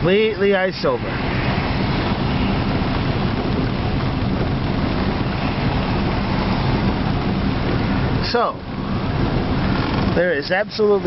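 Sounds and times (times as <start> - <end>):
wind: 0.0 - 11.0
steady rain: 1.1 - 9.9.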